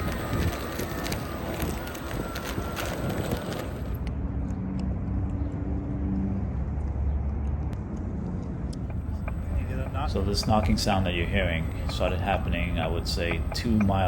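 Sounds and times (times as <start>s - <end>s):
wind noise: 0.0s - 5.6s, 6.4s - 14.0s
road and motor rumble: 0.0s - 14.0s
faint hum: 8.6s - 14.0s.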